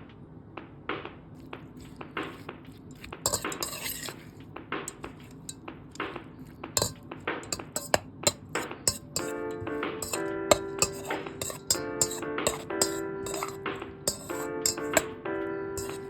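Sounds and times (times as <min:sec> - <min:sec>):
scraping rustle: 0:01.8 - 0:15.1, 0:15.8 - 0:16.0
utensils clinking against dishes: 0:02.3 - 0:16.0.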